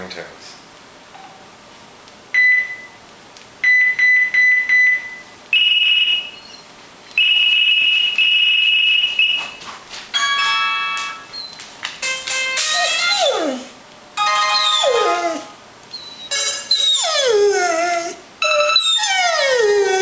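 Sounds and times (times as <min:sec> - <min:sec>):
phone beeps: 0:03.6 - 0:06.3
ringtone melody: 0:10.2 - 0:11.3, 0:12.0 - 0:12.9, 0:14.2 - 0:15.2, 0:16.3 - 0:16.8.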